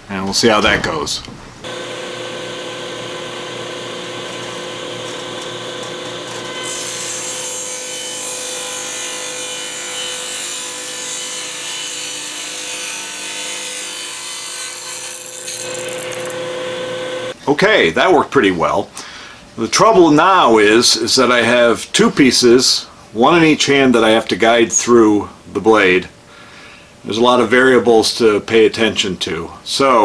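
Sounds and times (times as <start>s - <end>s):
table saw whine: 1.6s - 17.4s.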